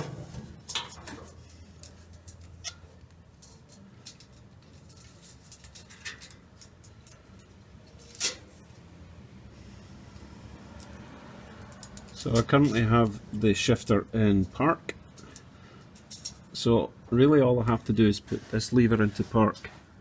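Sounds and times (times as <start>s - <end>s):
metallic clicks of tools handled: 0.7s - 8.6s, 11.6s - 12.9s, 15.0s - 16.5s.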